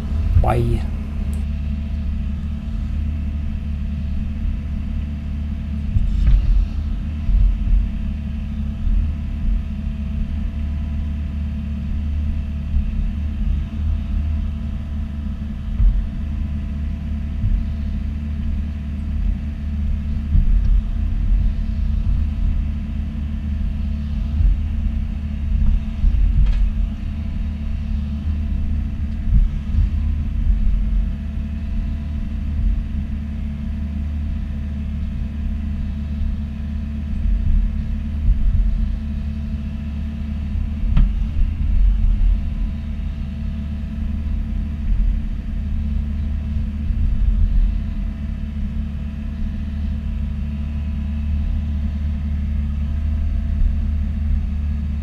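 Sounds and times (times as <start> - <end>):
excavator diesel engine rumbling: 0.0 - 2.0.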